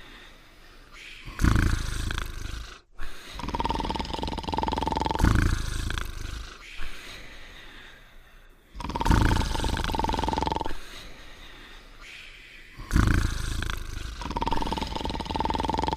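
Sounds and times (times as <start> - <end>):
cartoon snoring: 1.2 - 6.9, 8.7 - 10.8, 12.8 - 15.9.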